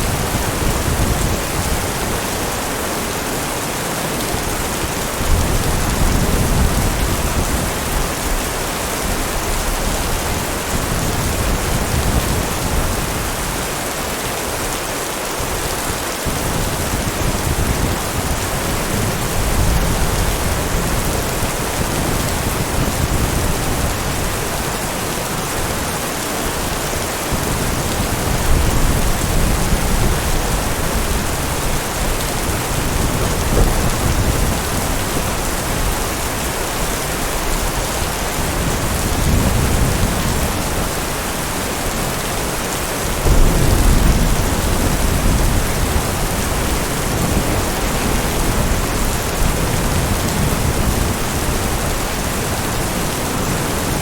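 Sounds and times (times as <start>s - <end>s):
heavy rain: 0.0s - 54.0s
low thunder rumbles: 4.4s - 13.7s, 15.9s - 42.3s, 43.1s - 54.0s.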